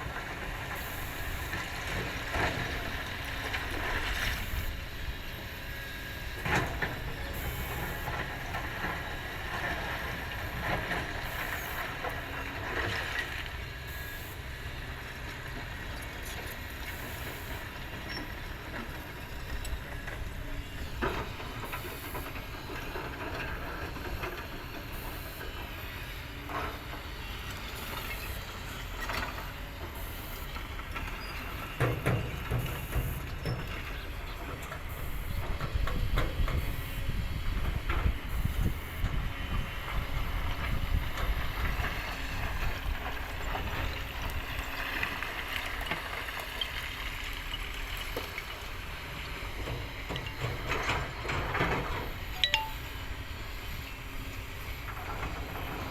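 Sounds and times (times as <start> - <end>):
diesel machinery running: 0.0 - 55.9.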